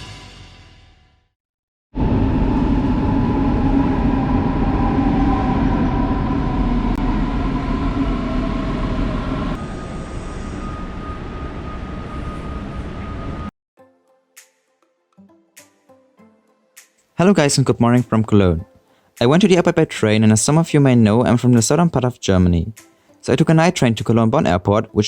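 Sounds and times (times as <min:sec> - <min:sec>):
steady high tone: 0:02.0 - 0:13.5
train rumbling on rails: 0:02.0 - 0:13.5.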